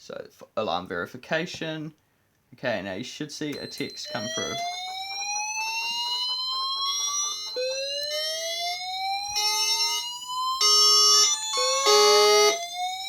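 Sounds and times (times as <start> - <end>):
loud steady alarm tone: 3.6 - 13.0
rapidly pulsing alarm: 3.6 - 13.0
rising sweep alarm tone: 3.6 - 13.0.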